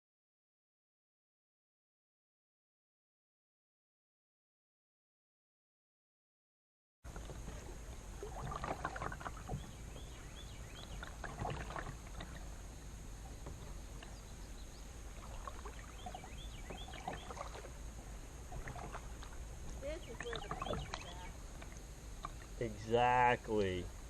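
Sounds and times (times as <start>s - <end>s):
paddle splashing in water: 7.1s - 22.8s
steady low hum: 7.1s - 24.0s
water dripping: 18.5s - 22.7s.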